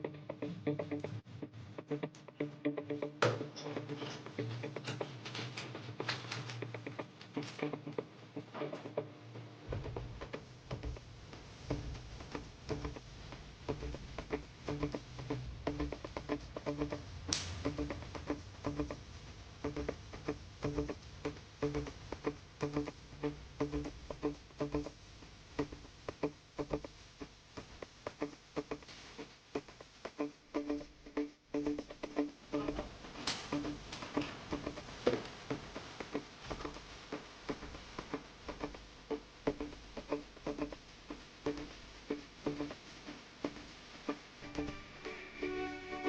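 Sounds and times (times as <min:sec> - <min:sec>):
low rumble: 0:09.7 - 0:22.2
plucked string instrumental: 0:44.4 - 0:46.0.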